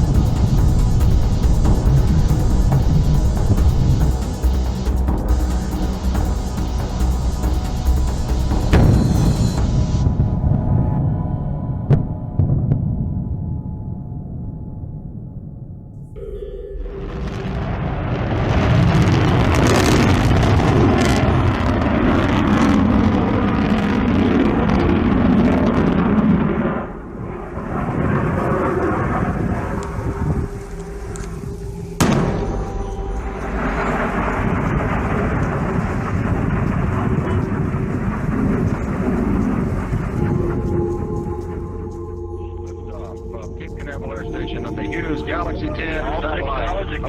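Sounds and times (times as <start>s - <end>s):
rocket roar: 16.2s - 41.1s.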